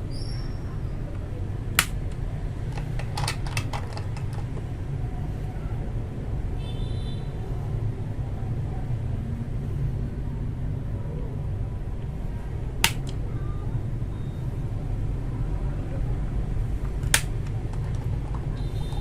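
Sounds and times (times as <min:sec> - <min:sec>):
keyboard switches clicking: 0:01.8 - 0:02.2, 0:12.8 - 0:13.2, 0:16.9 - 0:17.9.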